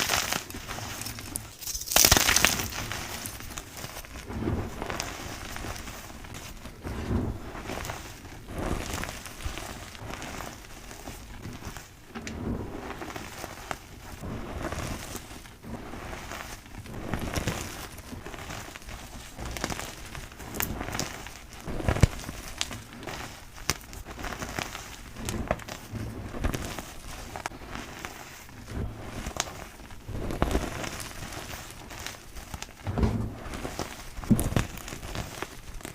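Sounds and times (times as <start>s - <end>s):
chalk pieces cracking: 0.0s - 3.5s
chalk crunching and crumbling: 0.0s - 35.9s.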